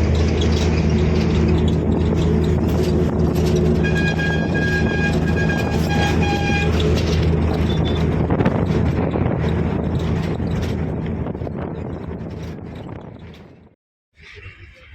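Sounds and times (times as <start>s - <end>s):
vehicle engine humming: 0.0s - 13.8s
vehicle horn: 3.8s - 6.8s.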